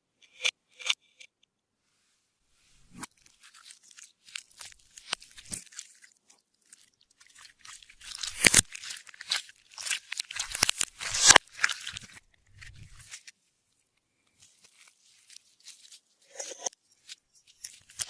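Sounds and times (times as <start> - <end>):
slime squished by hand: 3.0 - 13.2.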